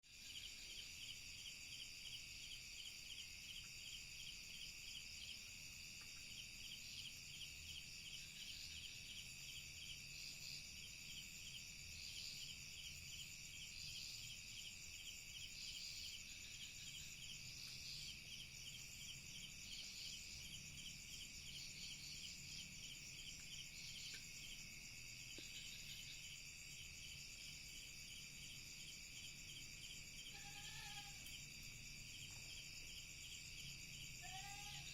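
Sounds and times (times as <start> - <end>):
insect chirping call: 0.1 - 34.9
fast pulsing insect trill: 6.3 - 34.9
insect buzzing: 12.0 - 34.9.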